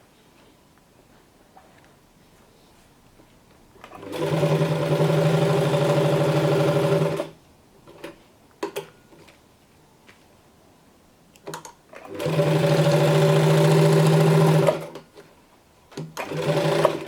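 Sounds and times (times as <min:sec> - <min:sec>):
sewing machine stitching leather: 0:03.8 - 0:08.1, 0:12.0 - 0:15.1, 0:16.0 - 0:17.0.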